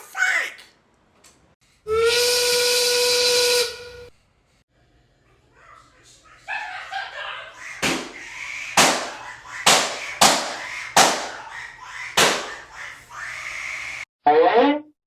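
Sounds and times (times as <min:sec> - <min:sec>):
firecracker-like bangs: 0:07.8 - 0:11.4, 0:12.2 - 0:12.6.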